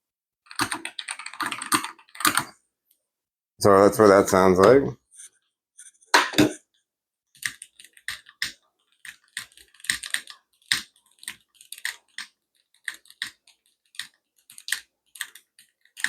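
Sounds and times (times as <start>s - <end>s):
mechanical keyboard typing: 0.5s - 2.5s, 7.4s - 16.0s.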